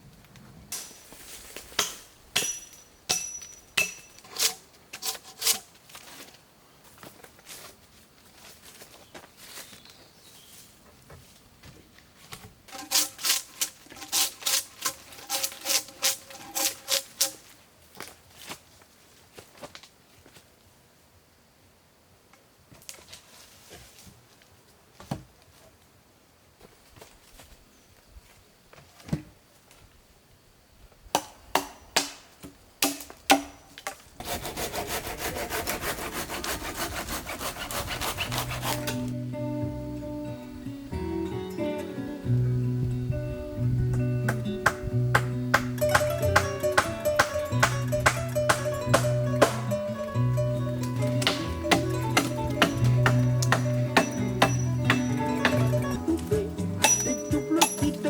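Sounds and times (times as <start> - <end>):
hand tool working wood: 1.7 - 5.7, 12.7 - 17.5, 34.2 - 39.2, 44.3 - 56.0
acoustic guitar music: 38.4 - 58.0.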